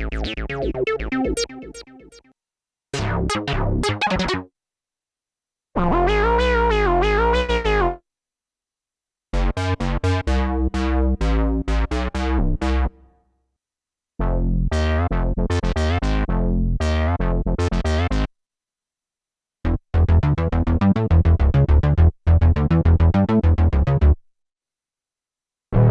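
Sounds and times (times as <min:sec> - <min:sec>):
synth bass line: 0:00.0 - 0:02.2, 0:03.0 - 0:04.5
synthesizer plucked notes: 0:00.0 - 0:02.3, 0:03.0 - 0:04.5
synthesizer wobbling held note: 0:03.3 - 0:04.4.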